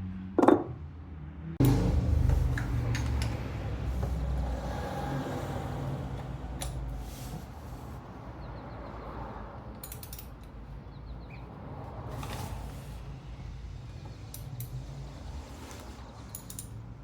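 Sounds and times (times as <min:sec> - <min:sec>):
ratchet clicking: 0:16.2 - 0:16.8.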